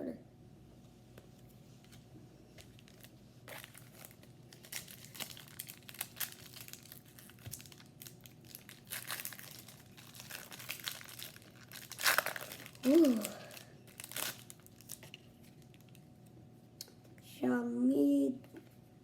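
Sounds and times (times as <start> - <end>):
foil wrapper crinkling: 2.6 - 16.3.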